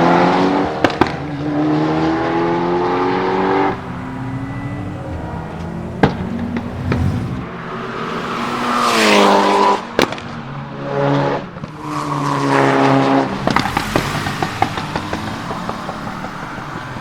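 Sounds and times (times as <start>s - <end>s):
exhaust pops and crackles: 0.0s - 7.5s, 9.0s - 17.0s
loud exhaust bang: 0.0s - 7.7s, 11.6s - 16.8s
car engine revving hard: 0.0s - 17.0s.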